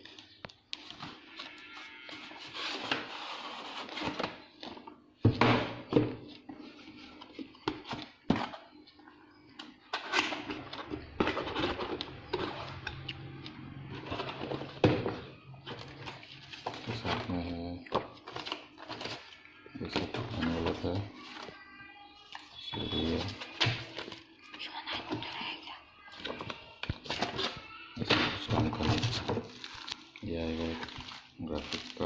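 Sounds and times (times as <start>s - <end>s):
packaging rustling: 28.4s - 32.0s.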